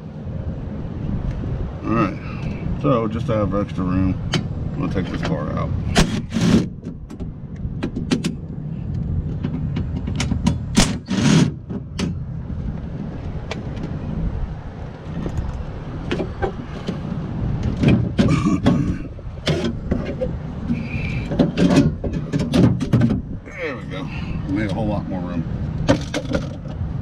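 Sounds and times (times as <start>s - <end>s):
steady low rumble: 0.0s - 27.0s
hand tools clicking and knocking: 9.3s - 12.2s, 15.2s - 23.2s.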